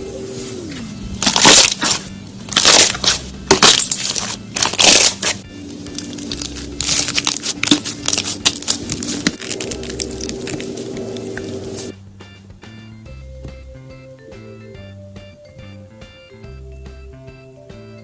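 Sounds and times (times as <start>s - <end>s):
steady low hum: 0.0s - 12.4s
crunchy slime crackling and popping: 1.2s - 11.9s.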